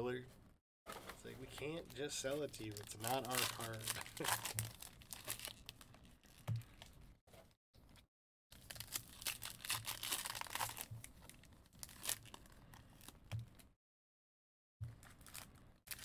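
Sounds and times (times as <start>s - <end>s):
foil wrappers crinkling and tearing: 1.5s - 5.9s, 8.6s - 13.1s, 15.0s - 16.0s.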